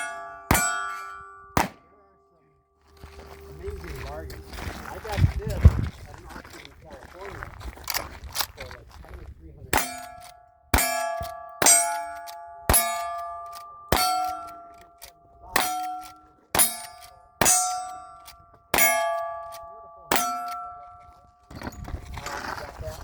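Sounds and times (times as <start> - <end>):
steel target clanging: 0.0 - 2.0, 9.8 - 21.6
gunshots: 1.6 - 1.9.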